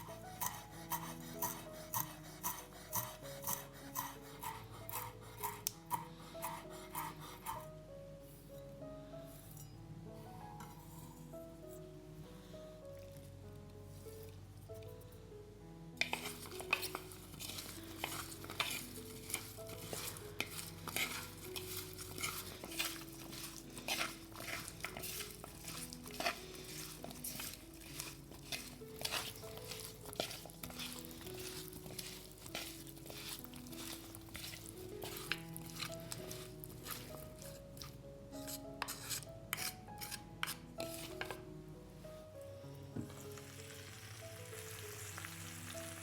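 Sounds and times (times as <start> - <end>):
utensil scraping cookware: 0.0 - 7.7, 16.0 - 41.4
soft background music: 0.0 - 46.0.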